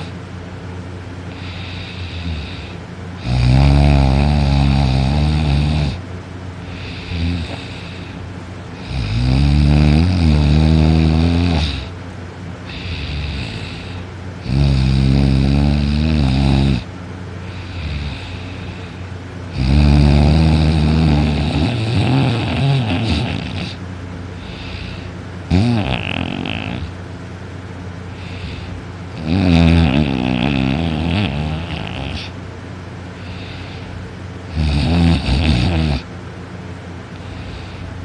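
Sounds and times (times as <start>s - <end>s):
quiet breathing: 1.3s - 2.9s, 6.6s - 9.1s, 12.6s - 14.2s, 17.4s - 19.2s, 21.6s - 25.2s, 28.0s - 29.1s, 33.1s - 34.2s, 37.1s - 38.0s
person snoring loudly: 1.3s - 6.0s, 6.7s - 8.2s, 8.8s - 11.9s, 12.7s - 16.9s, 17.5s - 23.8s, 24.4s - 26.9s, 28.2s - 32.3s, 34.5s - 36.1s.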